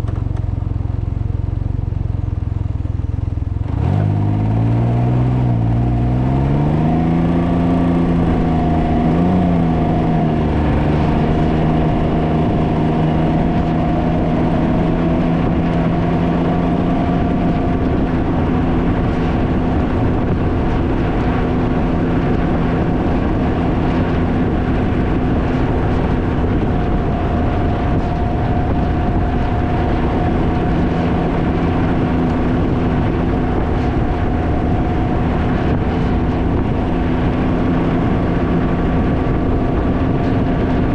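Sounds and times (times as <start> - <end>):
three-wheeler engine running: 0.0 - 40.9
wind buffeting microphone: 3.3 - 40.9.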